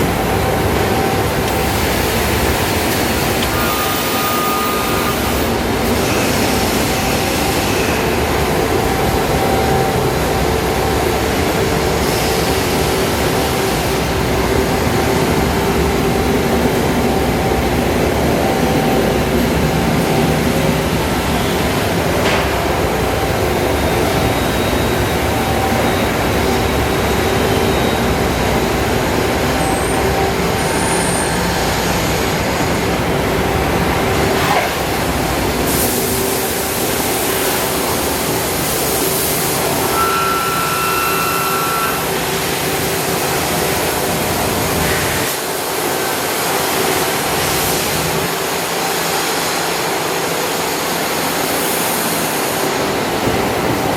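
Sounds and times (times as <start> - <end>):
lathe mechanical hum: 0.0 - 53.9.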